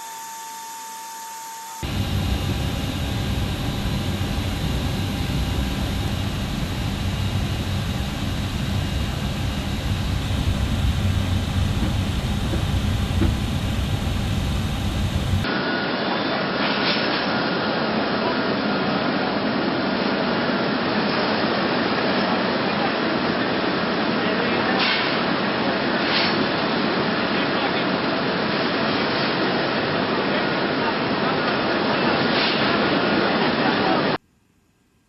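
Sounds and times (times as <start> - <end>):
faint engine whine: 0.0 - 16.1
jet engines running: 1.8 - 16.6.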